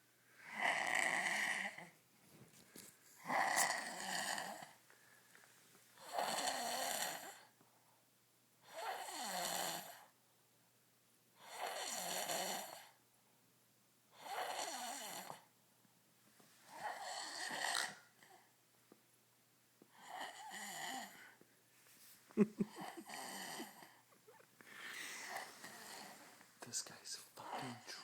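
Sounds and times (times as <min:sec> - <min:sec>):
man snoring: 0:24.7 - 0:26.4.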